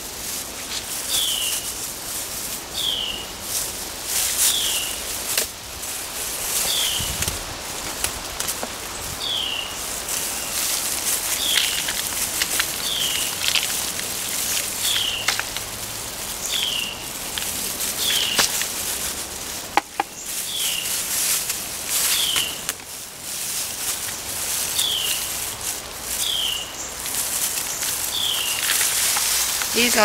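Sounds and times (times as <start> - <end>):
outdoor hiss: 0.0 - 30.0
rustles from handling plants: 0.0 - 30.0
bird chirping: 16.4 - 17.0, 27.6 - 28.9.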